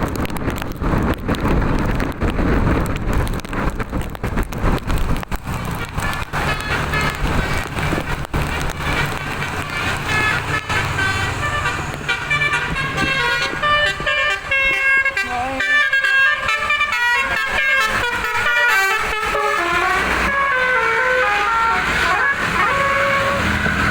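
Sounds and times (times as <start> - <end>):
bus engine: 0.0 - 23.9
electric air horn tune: 8.8 - 23.9.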